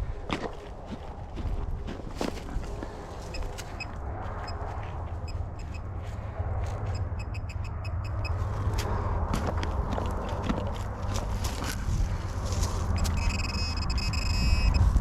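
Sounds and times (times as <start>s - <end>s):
footsteps outdoors: 0.0s - 15.0s
wind rumble on microphone: 0.0s - 15.0s
short high-pitched beeps: 6.9s - 8.4s, 13.0s - 14.9s.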